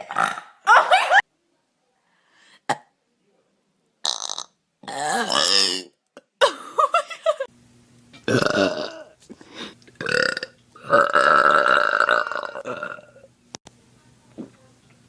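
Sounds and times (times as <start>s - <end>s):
person belching loudly: 0.0s - 0.6s, 4.0s - 6.0s, 8.2s - 9.2s, 10.0s - 13.3s.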